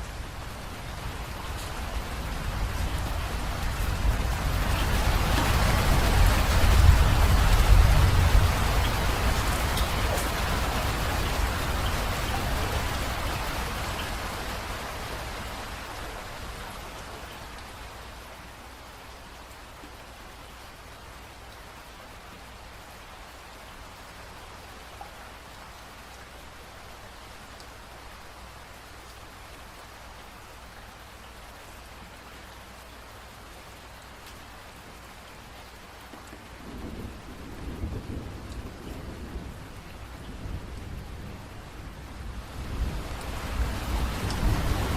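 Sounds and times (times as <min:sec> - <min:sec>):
rain falling: 0:00.0 - 0:44.9
low rumble of thunder: 0:00.3 - 0:13.7, 0:36.4 - 0:44.9.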